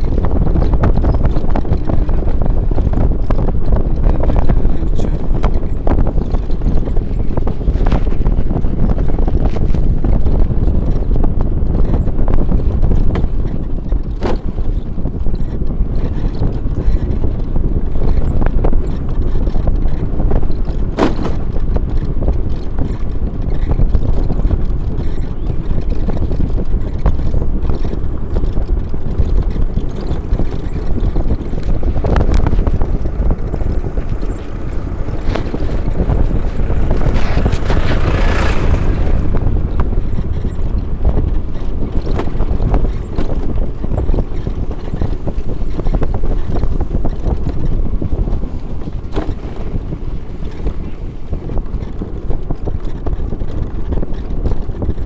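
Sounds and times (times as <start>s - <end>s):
rush of noise: 0.0s - 11.2s, 28.4s - 46.6s
road travel rumble: 0.0s - 55.0s
wind buffeting microphone: 0.0s - 55.0s.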